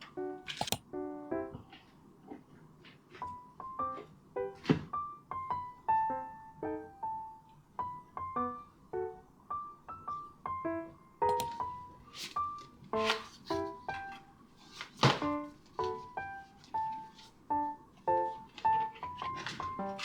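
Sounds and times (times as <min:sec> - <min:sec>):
electric piano melody: 0:00.0 - 0:02.3, 0:03.2 - 0:20.0
sharp clicks: 0:00.5 - 0:00.8.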